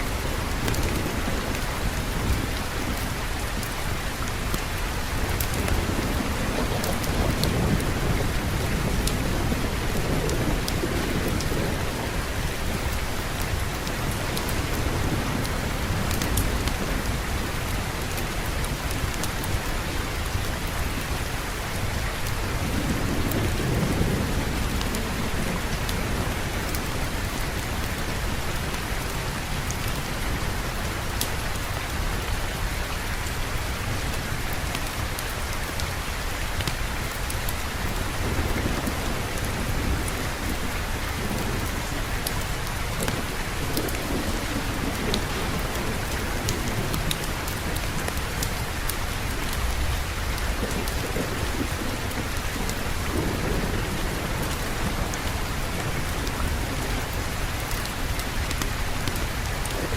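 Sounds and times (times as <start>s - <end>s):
heavy rain falling: 0.0s - 59.9s
low rolls of thunder: 5.1s - 19.0s, 21.9s - 30.7s, 37.7s - 59.9s.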